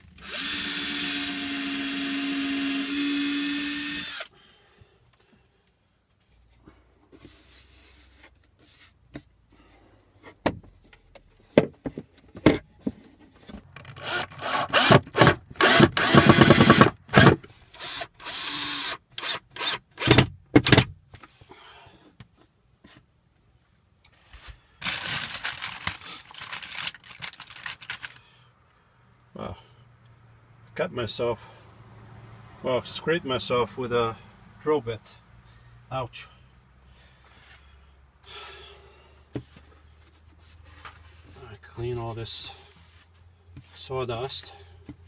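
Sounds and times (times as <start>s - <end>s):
power drill boring into wood: 0.0s - 4.3s, 13.8s - 20.3s.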